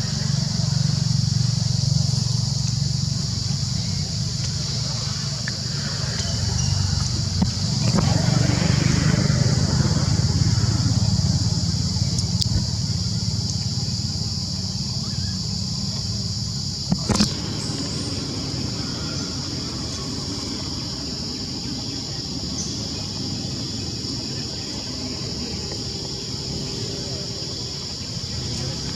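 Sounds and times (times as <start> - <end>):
high-pitched insect chorus: 0.0 - 28.9
sharp click: 16.9 - 17.4.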